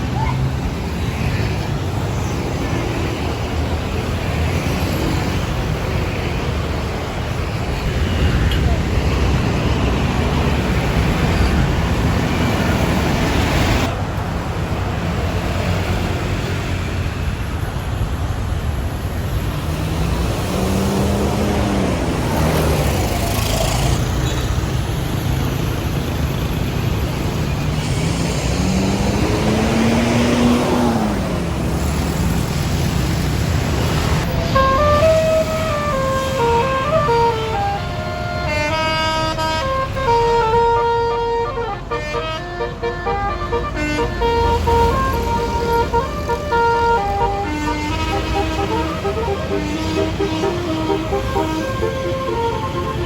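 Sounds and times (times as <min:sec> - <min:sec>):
traffic noise: 0:00.0 - 0:53.0
bus diesel engine revving: 0:19.4 - 0:41.9, 0:42.7 - 0:53.0.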